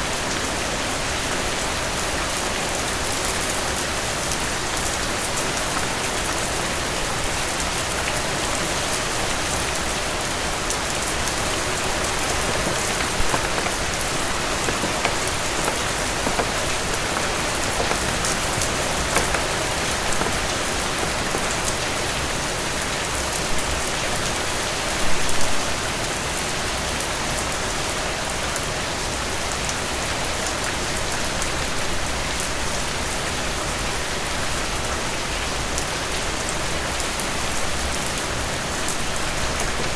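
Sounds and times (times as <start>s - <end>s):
heavy rain falling: 2.8s - 23.2s, 38.7s - 39.9s
rain drop impacts: 11.4s - 22.3s.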